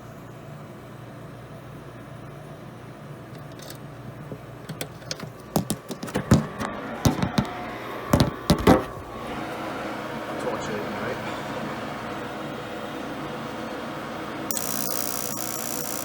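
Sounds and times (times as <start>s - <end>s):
steady machine hum: 0.0s - 16.0s
metal hardware clattering: 3.4s - 3.8s.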